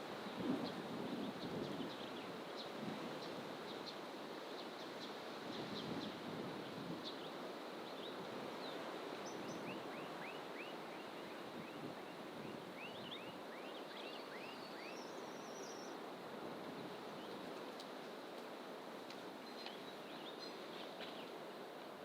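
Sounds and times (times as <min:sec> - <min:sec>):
bird whistling repeated notes: 0:12.8 - 0:15.9.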